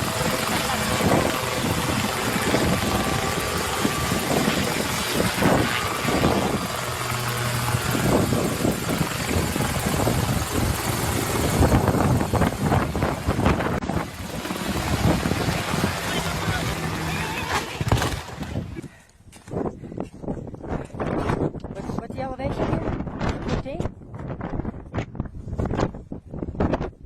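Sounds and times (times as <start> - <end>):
helicopter rotor and engine: 0.0 - 18.8.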